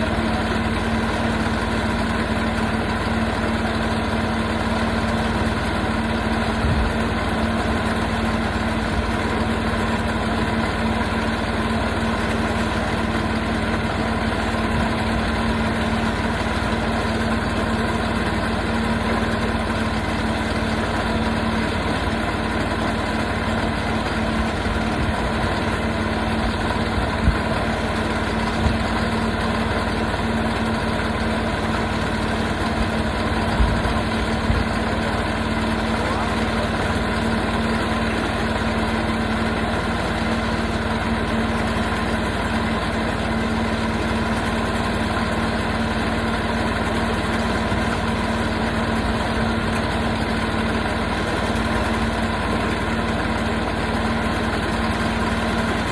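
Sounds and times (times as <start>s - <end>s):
sawmill engine running: 0.0s - 55.9s.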